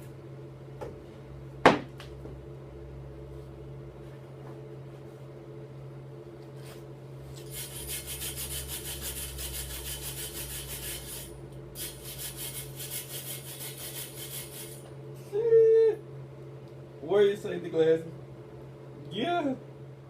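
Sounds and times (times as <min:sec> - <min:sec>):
steady low hum: 0:00.0 - 0:20.0
hand tool rasping on metal: 0:07.5 - 0:14.7.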